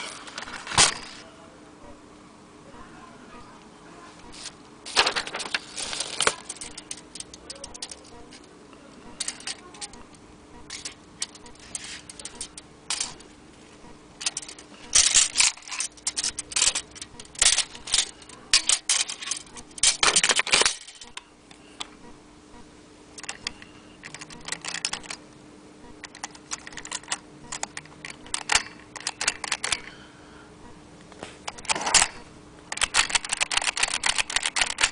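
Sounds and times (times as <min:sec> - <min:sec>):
typewriter key clacks: 0:32.7 - 0:34.9.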